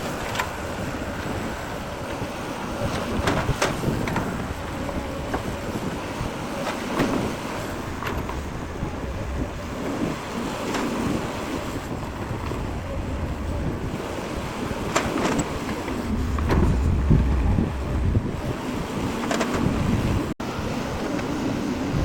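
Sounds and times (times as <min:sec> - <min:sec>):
diesel machinery rumbling: 0:00.0 - 0:22.0
wind on microphone: 0:00.0 - 0:22.0
short knocks and clanks: 0:14.8 - 0:20.0.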